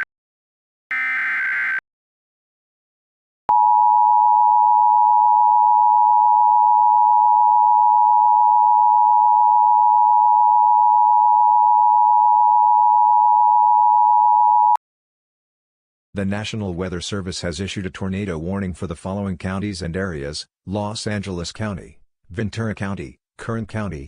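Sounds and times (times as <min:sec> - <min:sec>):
loud electronic alert tone: 0:00.9 - 0:01.8.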